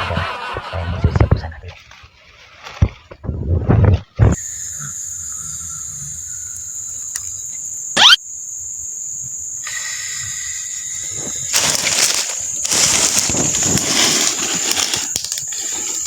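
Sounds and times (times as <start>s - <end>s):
lower insect tone: 4.2s - 16.0s
insects shrilling high tone: 4.3s - 16.0s.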